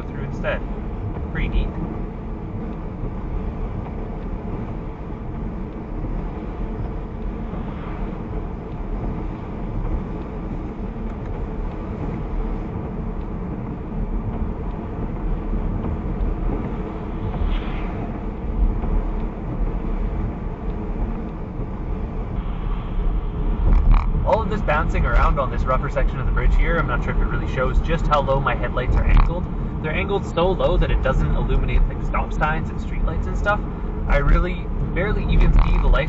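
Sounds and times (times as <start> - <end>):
car cabin road noise: 0.0 - 36.0.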